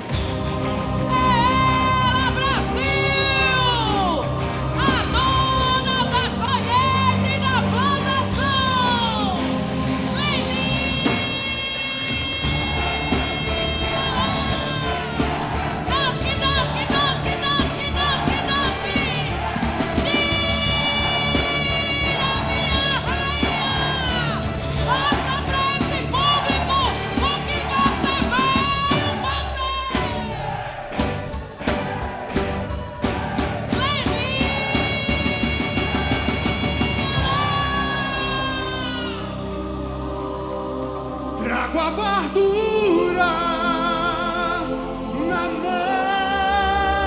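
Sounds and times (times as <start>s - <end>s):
steady drum beat: 0.0s - 42.4s.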